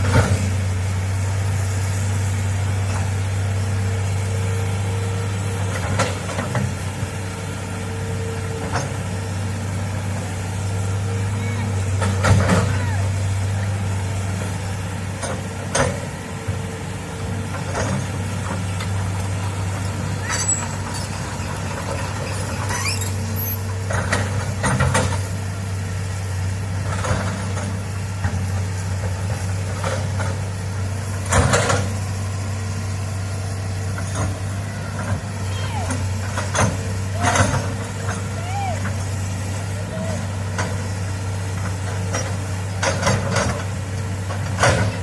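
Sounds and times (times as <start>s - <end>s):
excavator diesel engine running: 0.0s - 45.0s
short squeaks: 20.2s - 21.2s, 22.2s - 23.7s.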